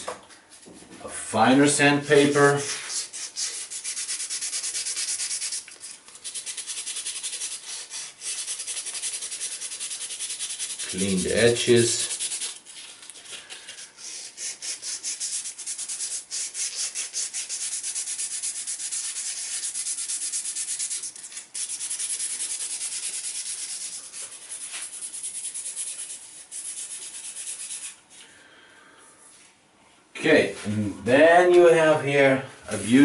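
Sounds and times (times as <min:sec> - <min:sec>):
sandpaper rubbing: 0:02.1 - 0:28.0.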